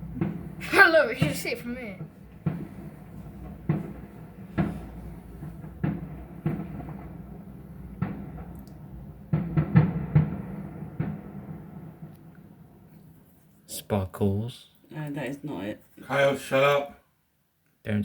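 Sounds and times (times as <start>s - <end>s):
dull fireworks bangs: 0.0s - 13.2s.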